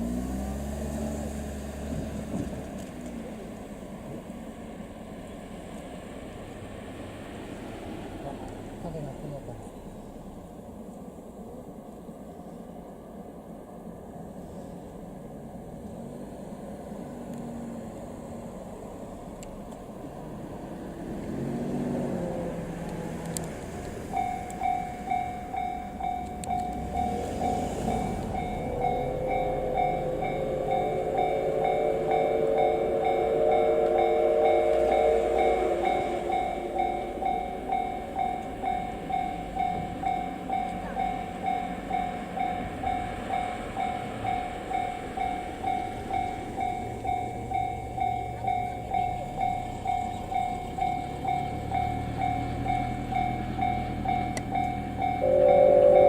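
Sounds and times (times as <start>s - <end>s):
level-crossing alarm bell: 24.0s - 56.0s
steam locomotive whistle: 24.1s - 56.0s.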